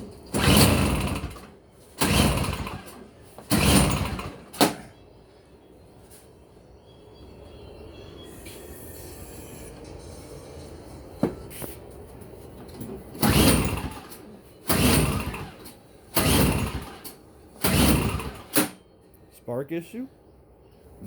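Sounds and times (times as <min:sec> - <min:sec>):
small engine cranking: 0:00.3 - 0:04.7, 0:13.2 - 0:18.8.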